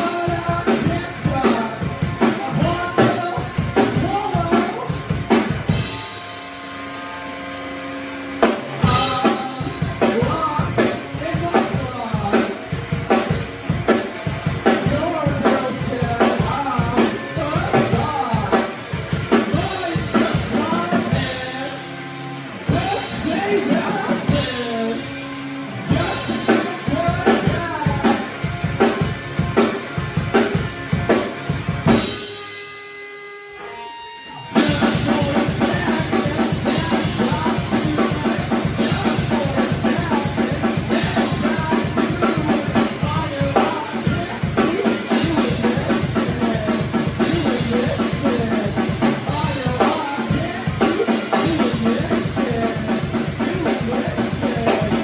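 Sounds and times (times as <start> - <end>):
drum kit: 0.0 - 55.0
live band playing: 0.0 - 55.0.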